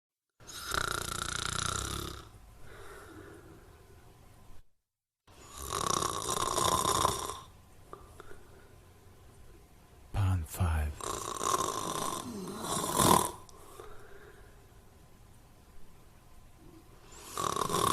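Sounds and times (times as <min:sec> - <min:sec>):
loud snoring: 0:00.5 - 0:02.3, 0:05.4 - 0:07.5, 0:11.0 - 0:13.4, 0:17.2 - 0:17.9.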